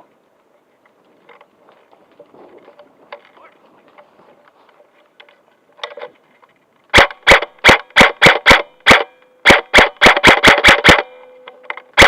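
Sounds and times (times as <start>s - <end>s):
airsoft gun shots: 6.9s - 11.3s.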